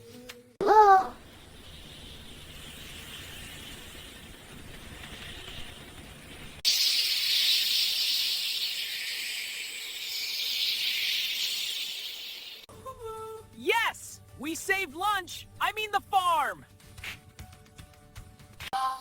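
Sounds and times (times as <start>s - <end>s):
faint hiss: 1.2s - 12.7s
loud hissing spray: 1.2s - 12.7s.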